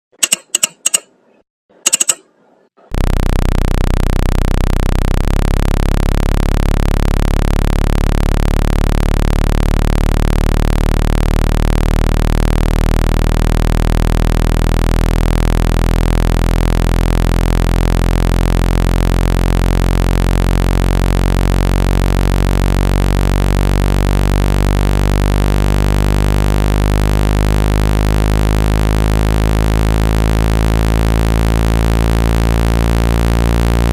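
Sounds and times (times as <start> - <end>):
short electronic blips: 0.1 - 1.2, 1.9 - 2.3, 2.9 - 13.5
low electronic buzzing tone: 1.9 - 2.2, 2.9 - 33.9.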